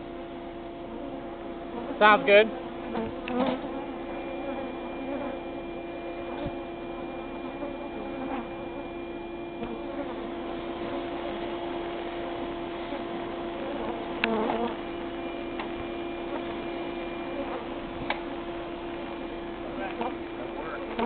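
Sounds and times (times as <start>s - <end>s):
bees buzzing: 0.0s - 21.0s.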